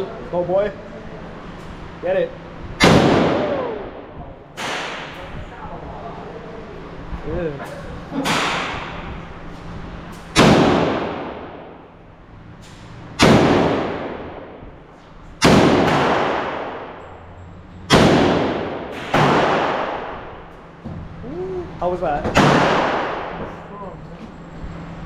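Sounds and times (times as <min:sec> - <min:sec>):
gunshots with long echo: 0:02.8 - 0:05.3, 0:10.4 - 0:11.9, 0:13.2 - 0:14.8, 0:15.4 - 0:17.0, 0:17.9 - 0:20.5, 0:22.3 - 0:23.5.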